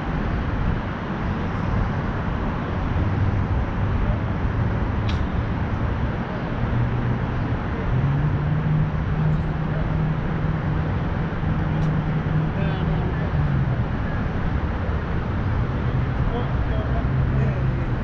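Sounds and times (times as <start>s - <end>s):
road traffic rumble: 0.0s - 18.0s
sharp click: 5.0s - 5.3s.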